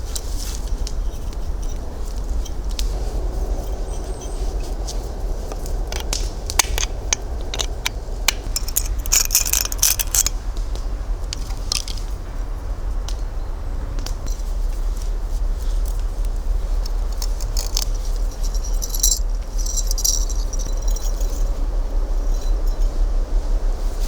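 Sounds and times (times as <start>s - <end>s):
hands clicking and crunching materials: 0.2s - 12.1s, 16.8s - 21.3s.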